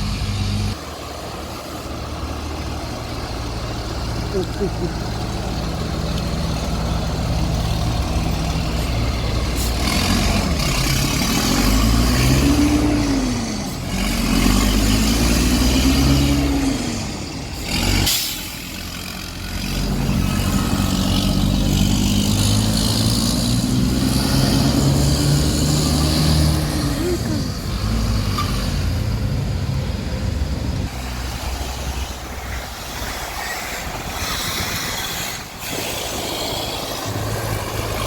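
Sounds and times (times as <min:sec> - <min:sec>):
diesel bus engine revving: 0:00.0 - 0:38.0
sharp air hiss: 0:18.0 - 0:18.7, 0:31.6 - 0:37.2.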